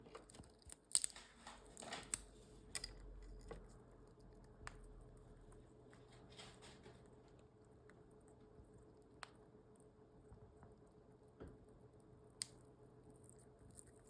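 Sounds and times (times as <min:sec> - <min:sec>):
parrot cracking a seed: 0:00.4 - 0:03.6.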